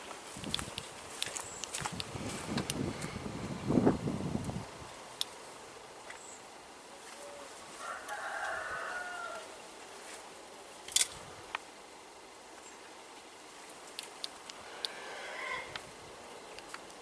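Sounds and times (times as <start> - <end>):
rooster crowing: 7.2 - 9.6.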